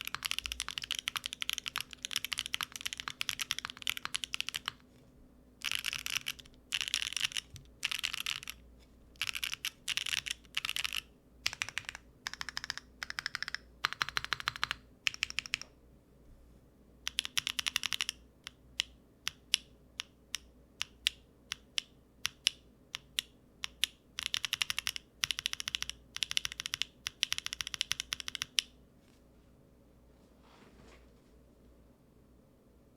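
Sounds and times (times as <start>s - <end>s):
mechanical keyboard typing: 0.0s - 4.8s, 5.6s - 8.6s, 9.2s - 15.7s, 17.0s - 19.7s, 20.3s - 28.7s.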